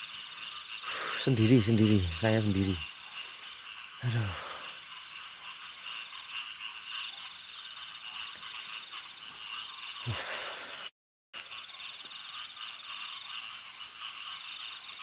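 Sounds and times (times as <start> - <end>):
insects trilling: 0.0 - 15.0
thin insect whine: 0.0 - 15.0.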